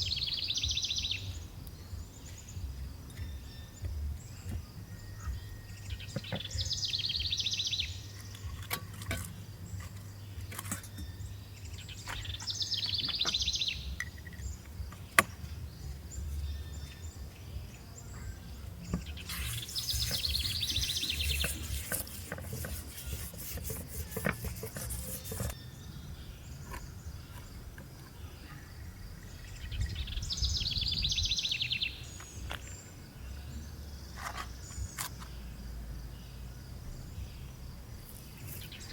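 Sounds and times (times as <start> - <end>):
faint insect hum: 0.0 - 38.9
sharp clicks and knocks: 18.9 - 25.6
rapid trilling call: 19.1 - 25.6.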